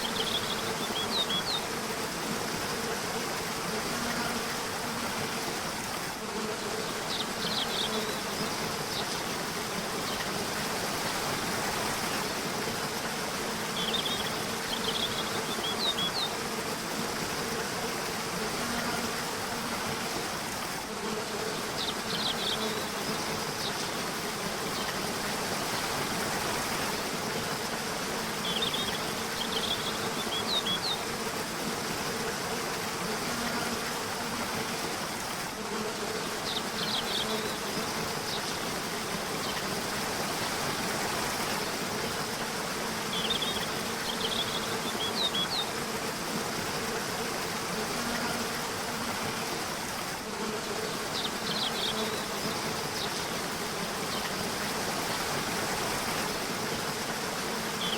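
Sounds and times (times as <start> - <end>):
small birds chirping: 0.0 - 1.8, 6.6 - 9.3, 13.7 - 16.5, 21.4 - 23.9, 28.4 - 31.1, 36.3 - 39.7, 43.1 - 45.8, 50.7 - 53.2
river water rushing: 52.1 - 57.9.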